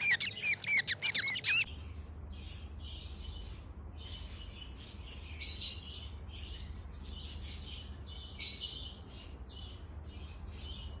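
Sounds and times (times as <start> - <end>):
budgerigars chattering: 0.0 - 1.7
loud budgerigar calls: 0.0 - 11.0.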